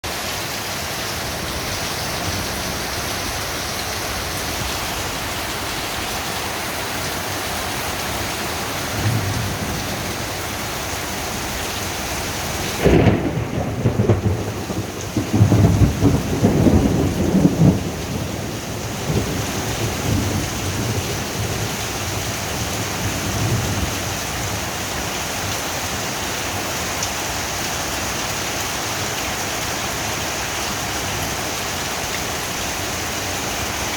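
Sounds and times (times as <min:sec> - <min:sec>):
heavy rain pouring: 0:00.0 - 0:33.9
thunder clap and rumbles: 0:08.9 - 0:10.4, 0:12.5 - 0:24.6.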